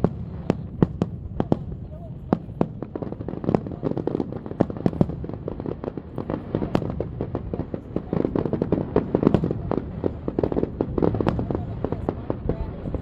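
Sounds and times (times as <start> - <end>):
fireworks cracks and booms: 0.0 - 13.0.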